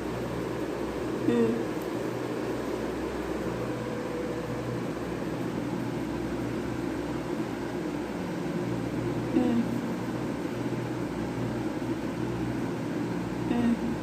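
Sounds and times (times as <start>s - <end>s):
background hum with hiss: 0.0s - 14.0s.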